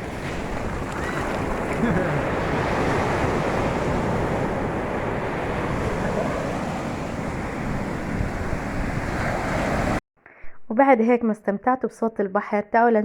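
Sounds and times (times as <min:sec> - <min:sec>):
sea waves washing onto beach: 0:00.0 - 0:10.0
wind buffeting microphone: 0:00.0 - 0:10.0.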